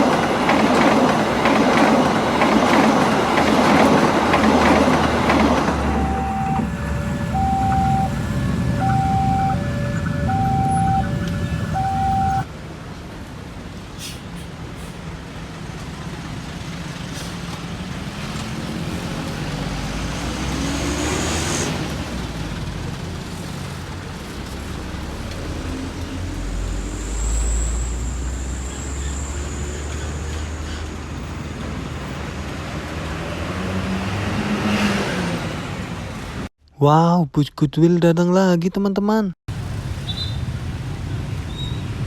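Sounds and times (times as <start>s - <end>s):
heavy vehicle passing: 0.0s - 12.4s
deep engine rumble: 3.6s - 12.4s
bus musical horn: 5.0s - 12.4s
high thin whine: 5.1s - 12.4s.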